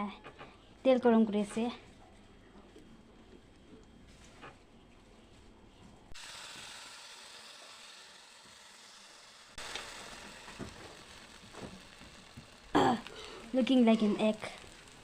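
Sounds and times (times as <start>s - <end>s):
batter sizzling in frying pan: 6.1s - 15.0s.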